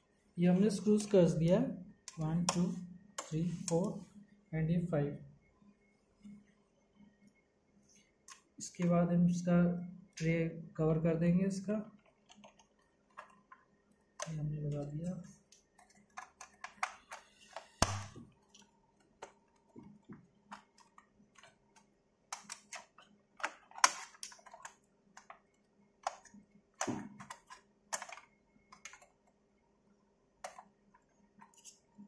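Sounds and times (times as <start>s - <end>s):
computer parts clicking: 20.5s - 29.2s.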